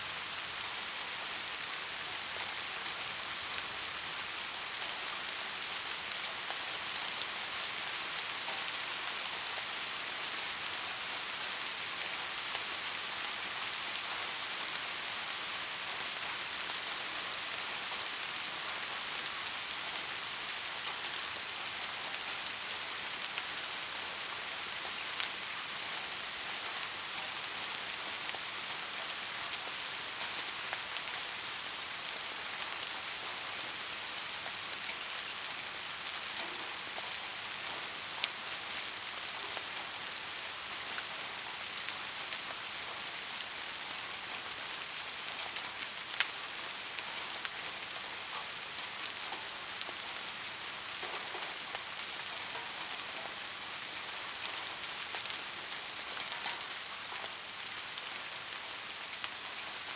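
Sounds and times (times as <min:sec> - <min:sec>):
steady rain falling: 0:00.0 - 0:59.9
raindrop ticks: 0:56.1 - 0:58.2.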